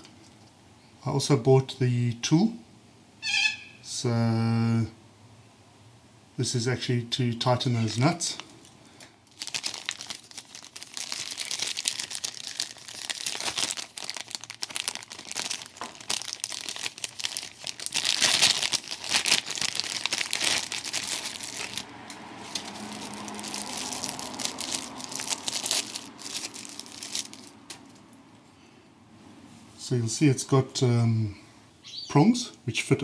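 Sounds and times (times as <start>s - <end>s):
crinkly packaging rustling: 7.8s - 28.2s.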